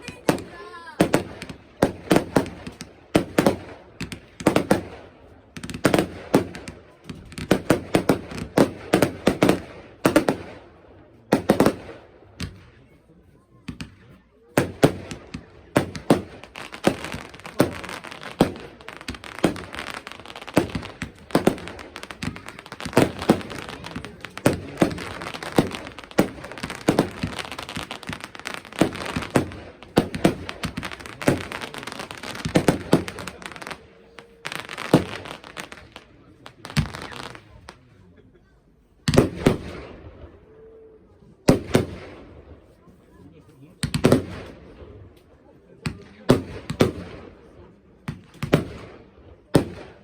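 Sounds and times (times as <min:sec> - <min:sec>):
fireworks crackling: 0:00.0 - 0:10.6, 0:13.7 - 0:37.9
fireworks bangs: 0:00.0 - 0:12.9, 0:13.6 - 0:37.8, 0:39.0 - 0:40.4, 0:41.4 - 0:42.8, 0:43.8 - 0:45.0, 0:45.8 - 0:50.0.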